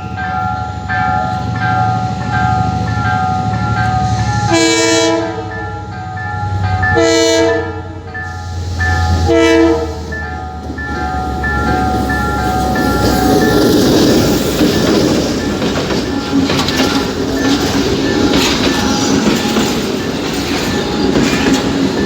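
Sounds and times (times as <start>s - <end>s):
low train rumble: 0.0s - 22.0s
two-tone train horn blasts: 4.4s - 5.6s, 6.9s - 10.4s.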